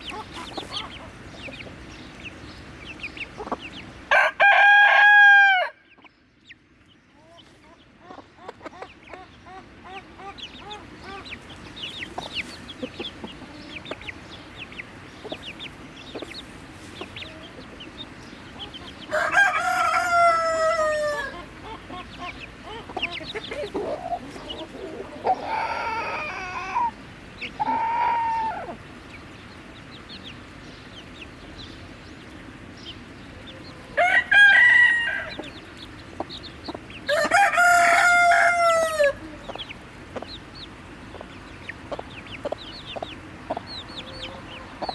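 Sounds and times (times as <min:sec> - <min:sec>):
chickens clucking: 0:00.0 - 0:05.0, 0:05.9 - 0:44.9
rooster crowing: 0:04.1 - 0:05.8, 0:19.1 - 0:21.5, 0:33.9 - 0:35.5, 0:37.1 - 0:39.2.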